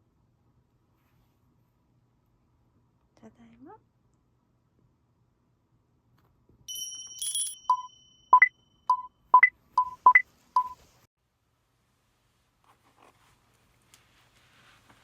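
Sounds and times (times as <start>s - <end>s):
electronic device beeping: 6.7s - 10.8s.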